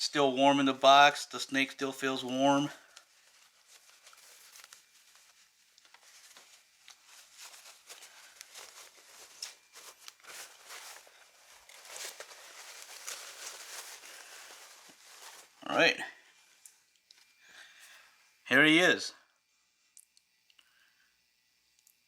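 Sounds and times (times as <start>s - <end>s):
packaging rustling and crinkling: 2.5s - 15.8s.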